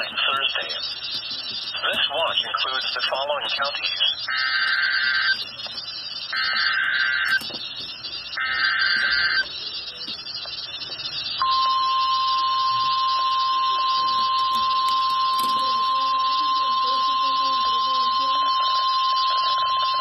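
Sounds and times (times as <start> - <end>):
radio hiss: 0.0 - 7.8
steady warning alarm tone: 0.0 - 20.0.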